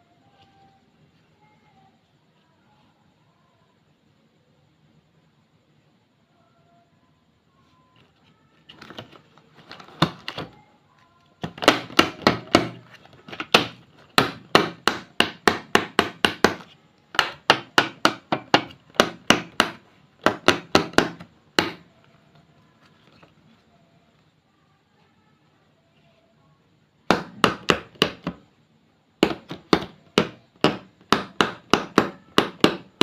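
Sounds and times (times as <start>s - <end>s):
sharp knocks on a hard surface: 11.4s - 21.8s, 27.1s - 28.4s, 29.2s - 33.0s.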